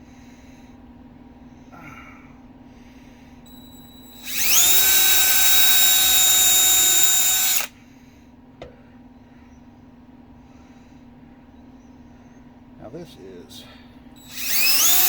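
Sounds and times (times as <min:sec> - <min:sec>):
power drill drilling into plywood: 0:03.5 - 0:07.7, 0:14.2 - 0:15.0.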